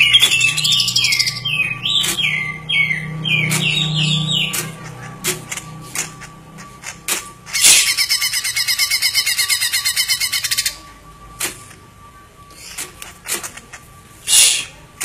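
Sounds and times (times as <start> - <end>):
bird singing chips and trills: 0.0 - 5.0.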